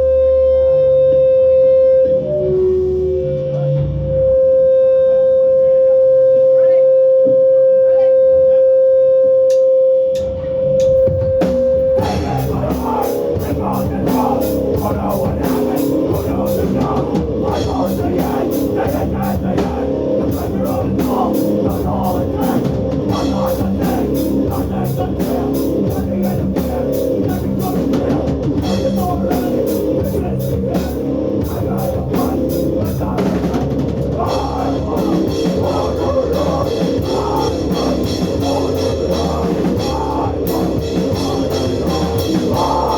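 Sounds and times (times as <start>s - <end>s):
distorted guitars: 9.5s - 42.9s
fast dense drumming: 10.8s - 42.9s.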